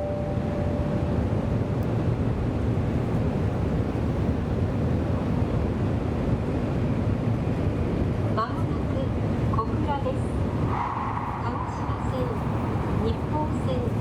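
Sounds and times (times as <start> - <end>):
onboard chime: 0.0 - 1.7
train cabin rumble: 0.0 - 10.6.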